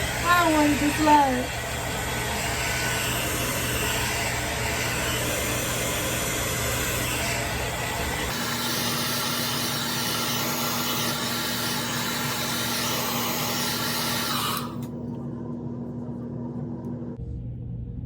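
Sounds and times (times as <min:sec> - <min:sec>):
hair dryer blowing: 0:00.0 - 0:14.9
low hum: 0:14.6 - 0:18.0.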